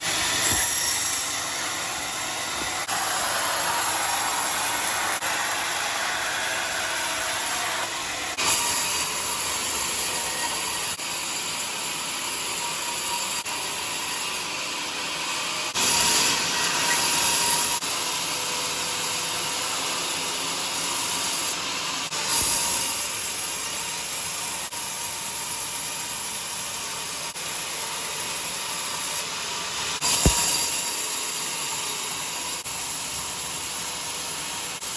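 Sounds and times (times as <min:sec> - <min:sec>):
sawmill blade cutting log: 0:00.0 - 0:11.0, 0:28.1 - 0:34.8.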